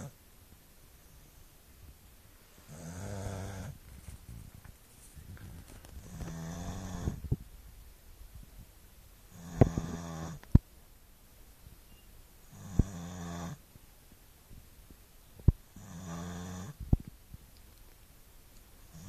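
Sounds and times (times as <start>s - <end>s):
dog snoring: 2.7s - 3.8s, 6.0s - 7.2s, 9.3s - 10.4s, 12.4s - 13.6s, 15.7s - 16.8s
snort: 2.7s - 3.8s, 6.0s - 7.2s, 15.8s - 16.8s.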